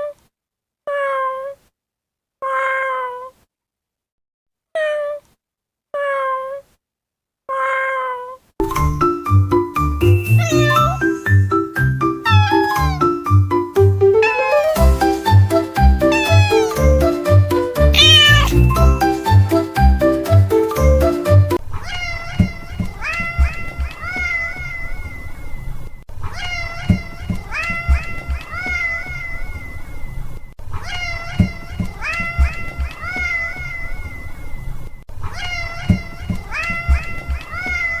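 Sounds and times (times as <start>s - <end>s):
cat meowing: 0.9s - 1.6s, 2.4s - 3.4s, 4.8s - 5.2s, 6.0s - 6.6s, 7.5s - 8.4s, 10.3s - 11.2s, 12.2s - 13.1s, 14.2s - 14.6s, 16.1s - 16.9s, 17.9s - 18.7s, 21.7s - 25.2s, 26.2s - 29.7s, 30.7s - 34.2s, 35.2s - 38.0s.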